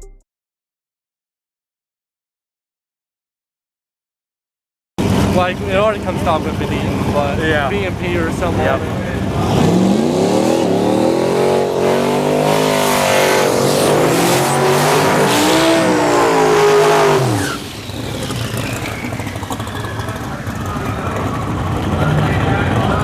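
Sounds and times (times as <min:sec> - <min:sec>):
race car engine revving: 0:05.0 - 0:23.0
track noise: 0:05.0 - 0:23.0.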